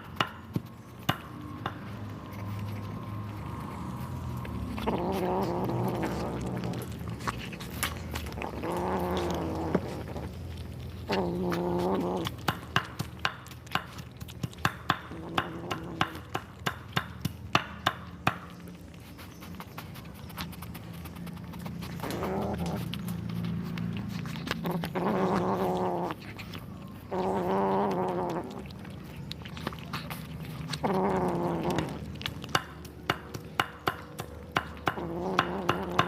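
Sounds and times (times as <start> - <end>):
crunching of bone chewing: 0.0 - 36.0
kittens growling cries: 2.5 - 12.9, 15.0 - 16.4, 21.8 - 32.5, 34.8 - 36.0.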